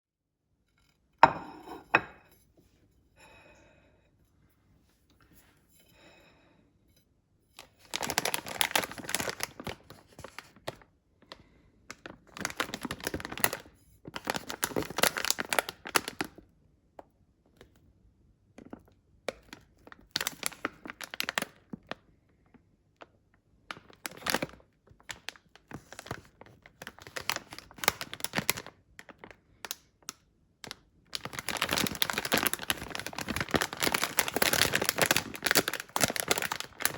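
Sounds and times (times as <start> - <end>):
food packaging rustling: 7.6 - 10.9, 11.9 - 16.4, 19.4 - 22.0, 23.7 - 29.4, 31.1 - 36.9.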